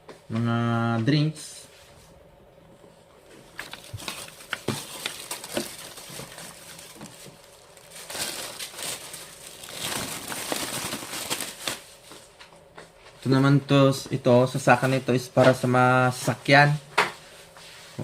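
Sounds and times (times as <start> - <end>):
crinkling and rustling handling noise: 1.7 - 13.4.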